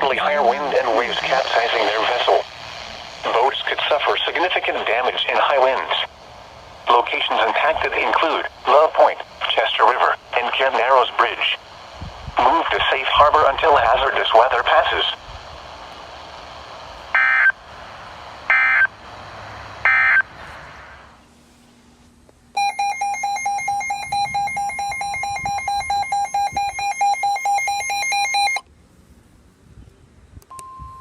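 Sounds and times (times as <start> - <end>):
raspy digital data bursts: 0.0 - 11.6, 22.6 - 28.6
warbling electronic alert tone: 22.6 - 28.6.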